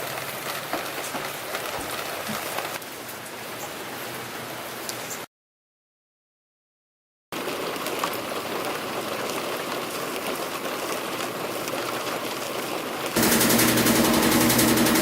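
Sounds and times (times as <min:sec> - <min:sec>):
water rushing into washing machine: 0:07.4 - 0:15.0
machine rattling and humming: 0:13.2 - 0:15.0.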